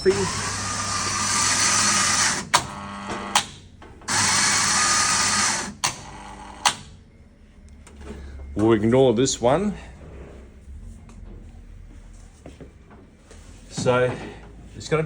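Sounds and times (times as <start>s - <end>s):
coffee grinder running: 0.0s - 3.4s, 4.1s - 6.6s.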